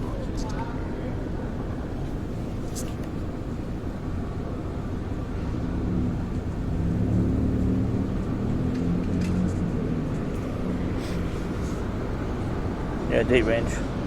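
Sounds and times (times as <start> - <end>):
bus engine rumble: 0.0 - 14.0.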